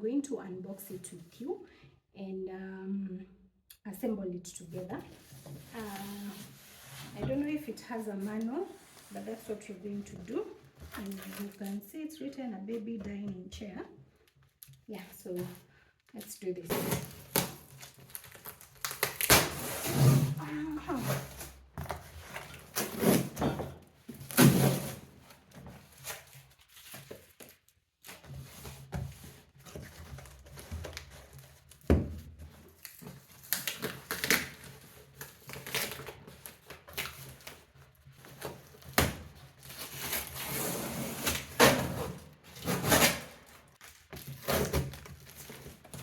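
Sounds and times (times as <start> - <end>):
cardboard packaging rustling: 4.9 - 11.9, 16.7 - 23.4, 24.0 - 46.0.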